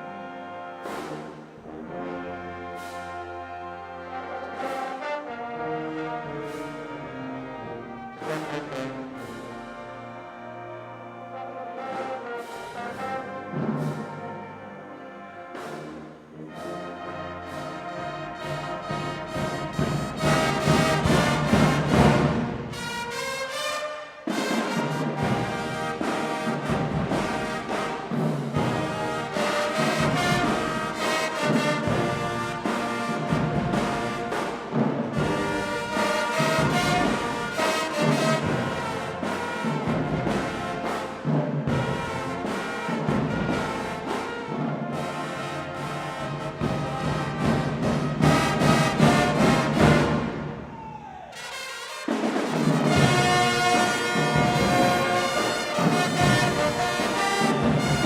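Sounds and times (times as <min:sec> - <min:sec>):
brass trumpets and trombones: 0:00.0 - 0:58.0
marching band playing: 0:00.0 - 0:58.0
steady drum beat: 0:18.3 - 0:23.2, 0:24.3 - 0:58.0.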